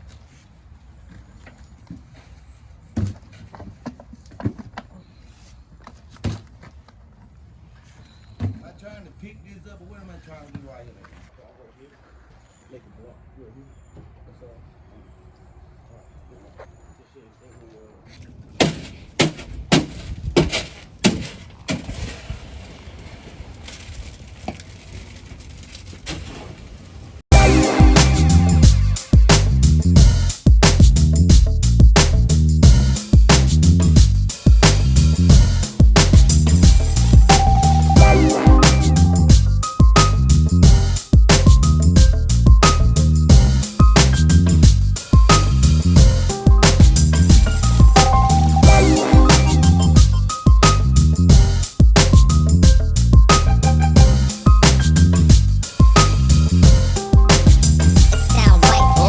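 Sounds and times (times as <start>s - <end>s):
low steady rumble: 27.3s - 33.0s, 35.0s - 38.2s, 40.2s - 41.0s, 44.2s - 48.8s
low rumble: 35.0s - 39.6s, 40.5s - 41.0s, 44.2s - 50.3s.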